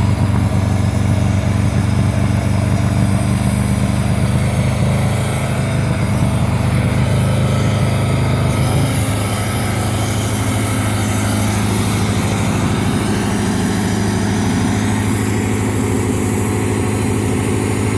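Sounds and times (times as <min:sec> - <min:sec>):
sawmill engine running: 0:00.0 - 0:17.9.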